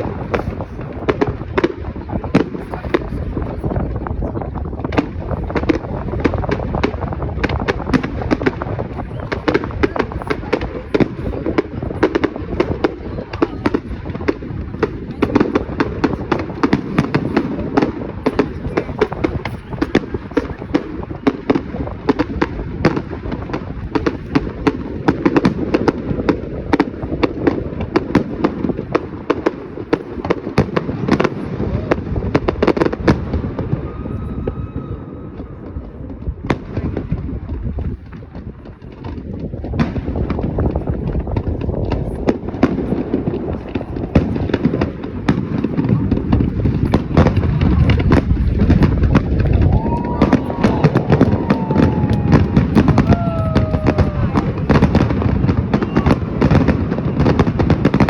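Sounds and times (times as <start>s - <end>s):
fireworks cracking and banging: 0.0s - 58.0s
low rumble of booming shells: 35.3s - 58.0s
firework whistle: 49.4s - 56.6s.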